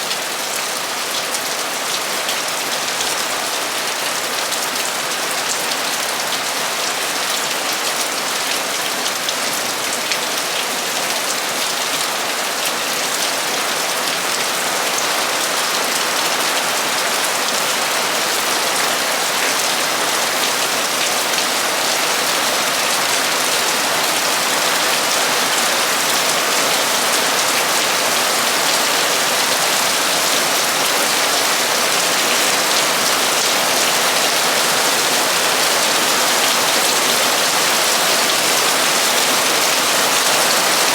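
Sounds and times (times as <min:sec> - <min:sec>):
heavy rain on a metal roof: 0:00.0 - 0:40.9.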